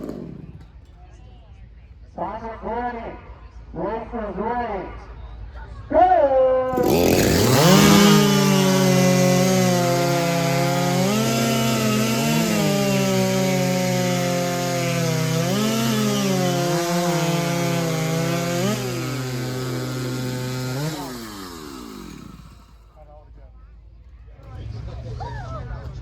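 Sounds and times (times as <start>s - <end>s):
chainsaw cutting through a log: 0.0s - 0.8s, 6.7s - 22.8s.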